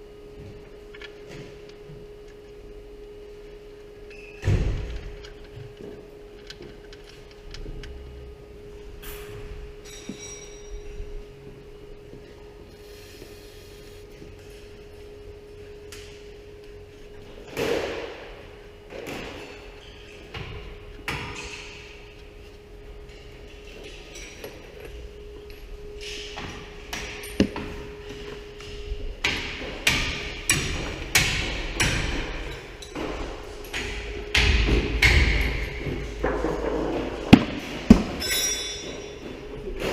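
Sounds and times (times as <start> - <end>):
faint steady hum: 0.0 - 39.9
metal tools knocking and clanking: 31.8 - 39.4.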